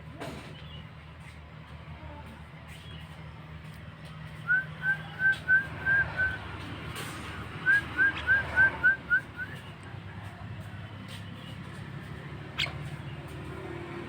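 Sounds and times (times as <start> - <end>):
bird whistling rising notes: 7.6 - 9.6.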